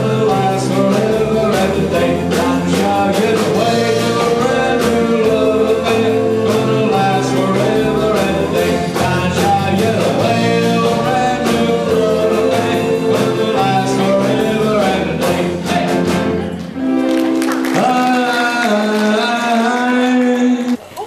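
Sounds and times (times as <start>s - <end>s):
steady drum beat: 0.0s - 16.6s
rock and roll music: 0.0s - 19.8s.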